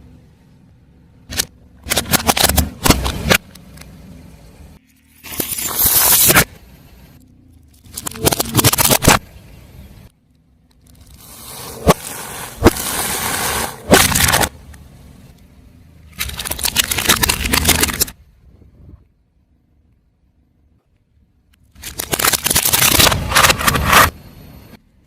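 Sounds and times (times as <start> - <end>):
tyre crunching objects: 10.8 - 14.5, 21.8 - 24.2.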